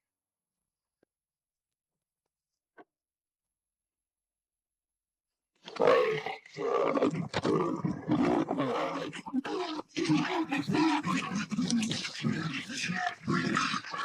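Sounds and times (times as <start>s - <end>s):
leopards growling and snarling: 5.6s - 14.0s.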